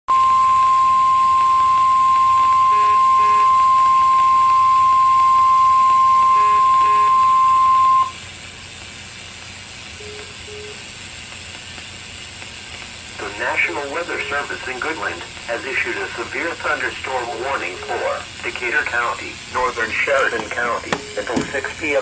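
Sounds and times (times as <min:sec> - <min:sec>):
steady alarm beep: 0:00.1 - 0:08.2, 0:10.0 - 0:10.8, 0:20.5 - 0:21.6
radio static hiss: 0:05.6 - 0:22.0.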